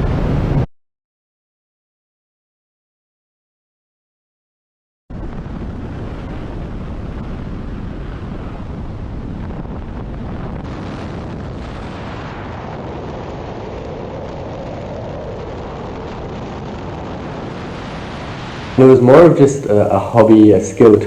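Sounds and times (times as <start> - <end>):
wind noise on microphone: 0.0 - 0.7, 5.1 - 21.0.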